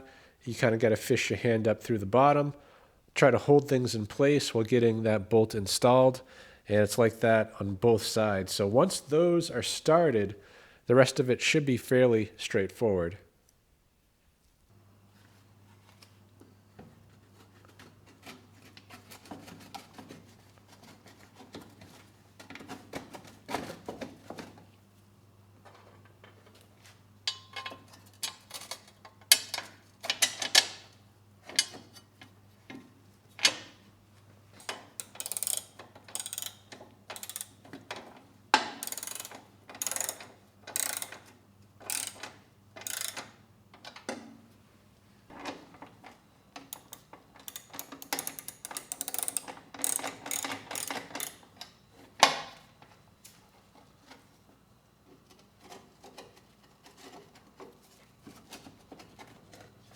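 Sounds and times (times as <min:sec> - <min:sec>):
ratchet wrench clicking: 0:35.0 - 0:37.6, 0:38.6 - 0:41.2, 0:41.8 - 0:43.3, 0:46.8 - 0:51.4.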